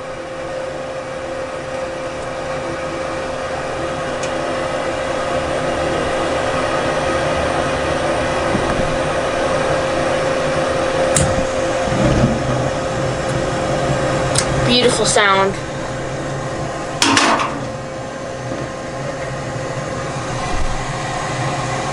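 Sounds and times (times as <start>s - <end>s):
furnace fan humming: 0.0s - 21.9s.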